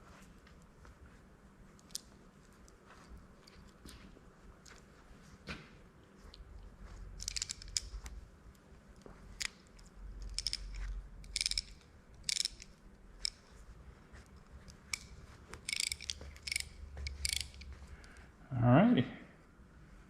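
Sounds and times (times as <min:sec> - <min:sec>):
ratchet parts clicking and clinking: 0:07.2 - 0:08.1, 0:09.4 - 0:13.4, 0:14.6 - 0:18.2.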